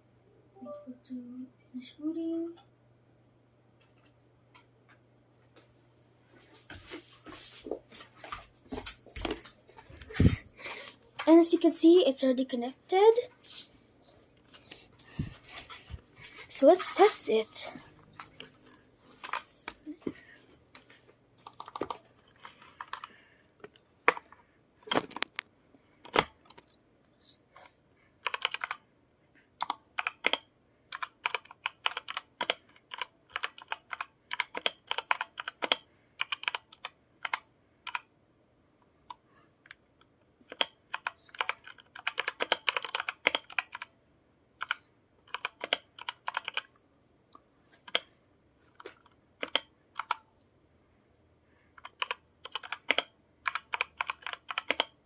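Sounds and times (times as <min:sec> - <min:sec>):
mechanical keyboard typing: 0:21.4 - 0:23.1, 0:28.2 - 0:28.8, 0:29.6 - 0:38.1, 0:40.5 - 0:43.9, 0:44.6 - 0:46.7, 0:48.8 - 0:50.2, 0:51.8 - 0:55.0.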